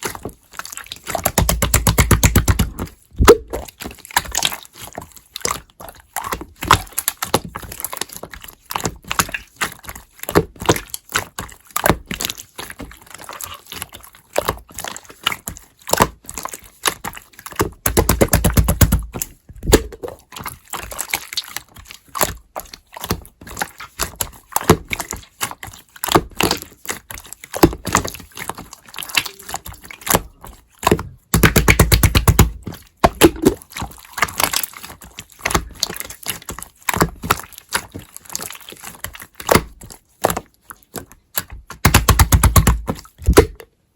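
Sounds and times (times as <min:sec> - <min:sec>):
hands squishing slime: 0:00.0 - 0:43.9.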